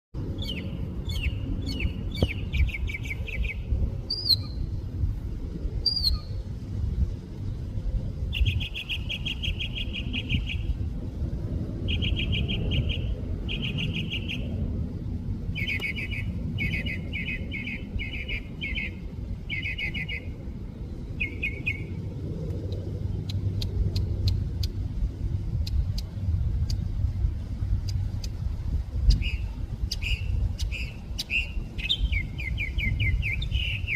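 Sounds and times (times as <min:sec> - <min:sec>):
low rumble: 0:00.2 - 0:33.9
mockingbird singing: 0:11.9 - 0:14.5, 0:15.6 - 0:20.4, 0:21.2 - 0:21.9, 0:29.1 - 0:33.9.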